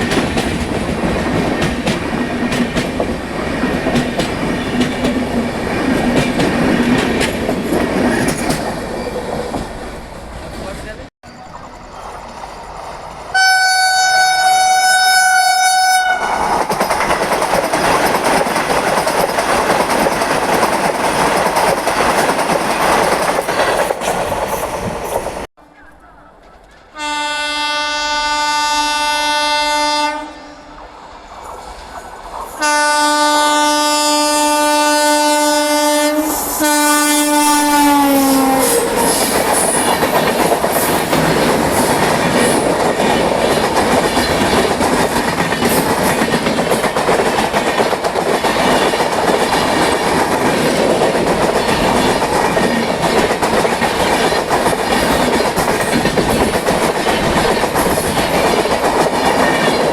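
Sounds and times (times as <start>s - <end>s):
train passing with clickety-clack: 0.0s - 27.7s, 29.3s - 59.9s
train horn blasts: 13.3s - 16.3s, 26.9s - 30.9s, 32.6s - 38.8s.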